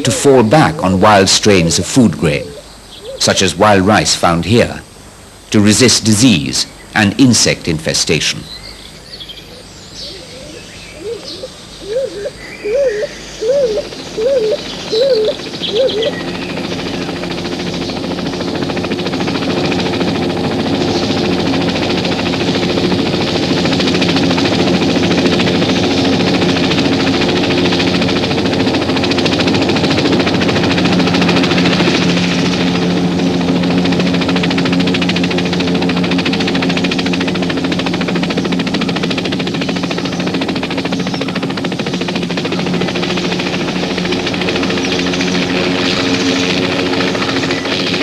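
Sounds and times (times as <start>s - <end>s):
engine-like drone: 10.0s - 48.0s.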